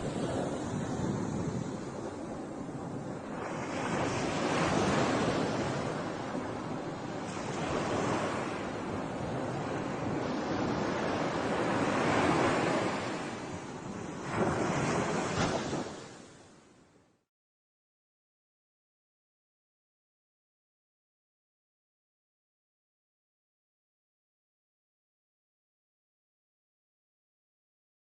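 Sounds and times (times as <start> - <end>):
wind buffeting microphone: 0.0 - 16.3
sea waves washing in: 0.0 - 17.0.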